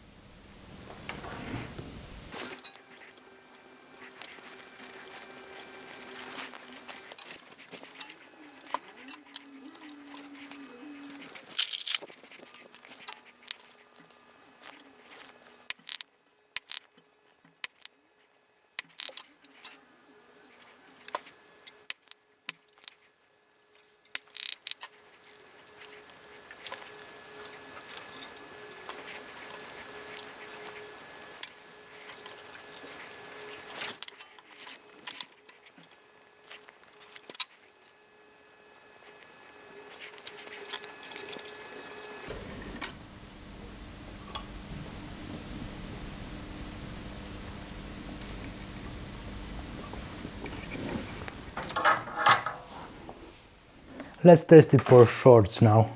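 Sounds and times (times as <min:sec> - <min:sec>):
faint hiss with low hum: 0:00.0 - 0:15.7, 0:25.0 - 0:55.9
tools clicking and clinking: 0:51.6 - 0:52.9.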